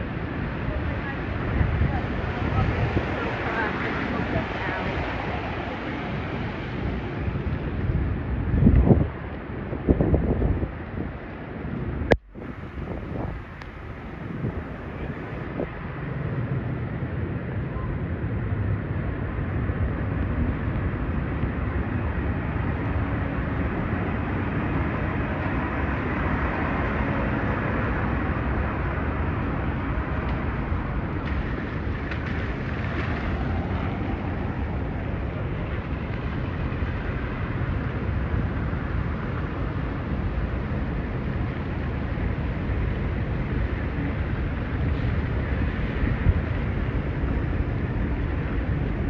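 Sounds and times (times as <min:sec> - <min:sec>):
city street traffic rumble: 0:00.0 - 0:49.0.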